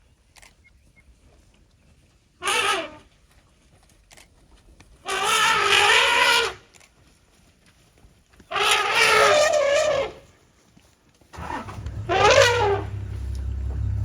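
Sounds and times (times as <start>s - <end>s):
elephant trumpeting: 2.4s - 3.0s, 5.1s - 6.6s, 8.5s - 10.2s, 11.4s - 14.0s.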